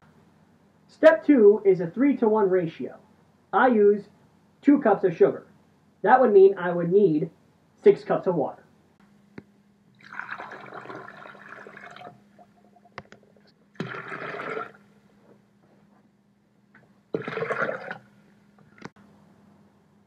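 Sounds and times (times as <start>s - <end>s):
water pouring into a pitcher: 10.0s - 13.0s, 13.8s - 14.8s, 17.1s - 18.1s.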